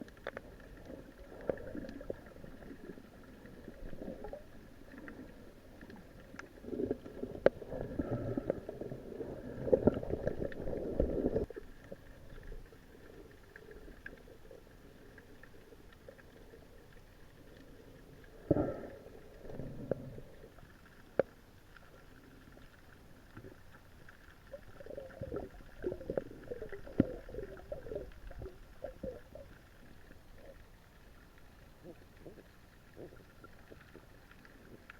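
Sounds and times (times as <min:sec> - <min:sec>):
faint steady hum: 0:00.0 - 0:34.9
underwater gurgling water: 0:00.0 - 0:34.9.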